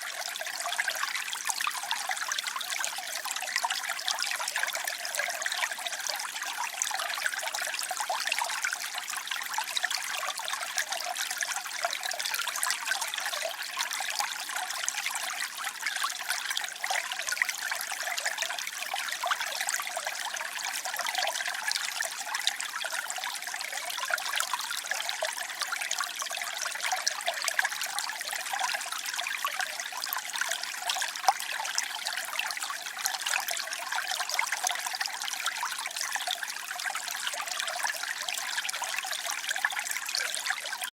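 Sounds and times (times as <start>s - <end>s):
water trickling and splashing: 0.0s - 40.9s.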